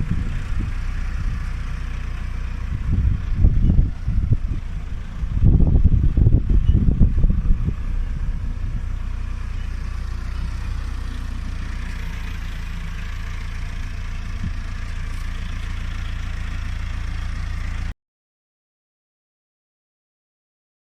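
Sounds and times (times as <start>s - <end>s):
tractor engine running: 0.0s - 17.9s.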